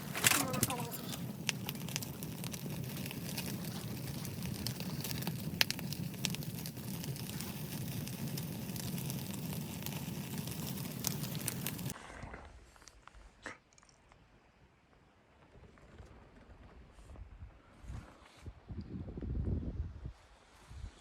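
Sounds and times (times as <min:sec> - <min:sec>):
wood fire crackling and popping: 0:00.0 - 0:12.0.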